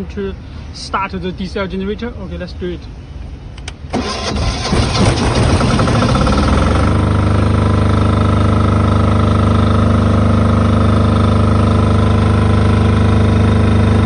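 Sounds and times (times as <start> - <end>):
diesel generator engine running: 3.2 - 14.0.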